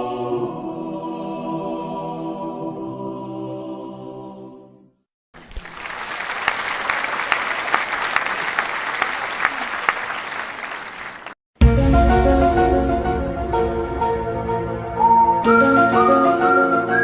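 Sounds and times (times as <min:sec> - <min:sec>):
crowd applauding: 0:05.4 - 0:11.4.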